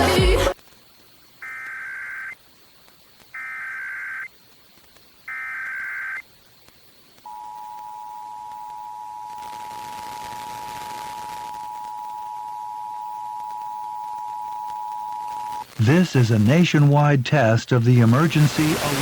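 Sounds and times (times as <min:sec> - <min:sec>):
digital data bursts: 0:09.4 - 0:11.8, 0:15.3 - 0:19.0.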